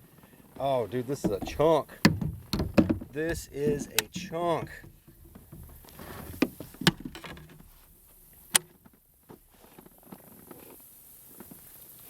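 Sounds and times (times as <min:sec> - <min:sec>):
gear knocking against kayak: 0:00.6 - 0:10.2.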